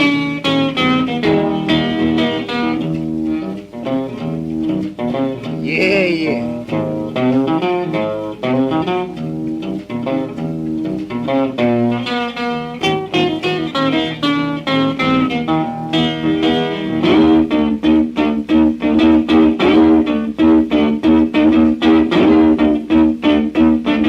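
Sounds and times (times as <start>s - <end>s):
solo blues guitar: 0.0s - 24.0s.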